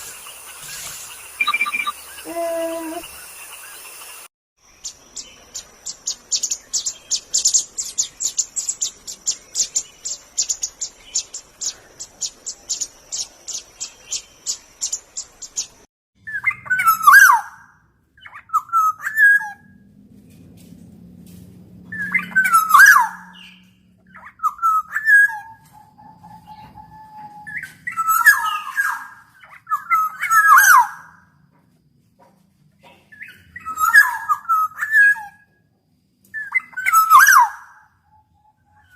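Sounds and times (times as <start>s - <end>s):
bird high-pitched chirps: 0.6s - 3.3s, 4.7s - 17.6s
bird whistled call phrases: 16.3s - 17.6s, 22.0s - 31.1s, 33.2s - 35.4s, 36.4s - 38.9s.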